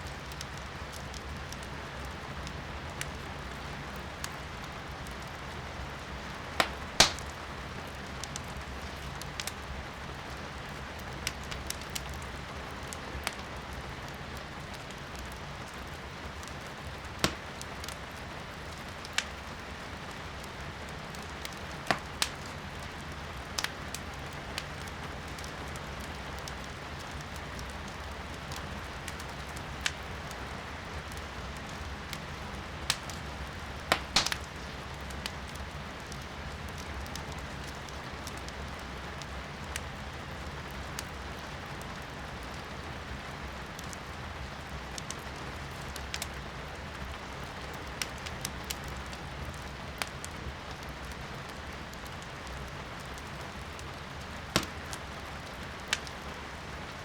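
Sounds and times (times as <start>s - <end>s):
wood fire crackling and popping: 0.0s - 57.0s.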